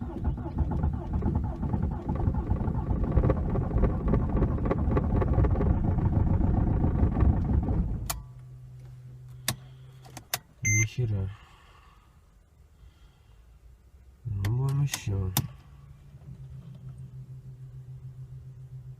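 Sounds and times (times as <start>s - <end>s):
diesel engine cranking by starter: 0.0s - 8.3s.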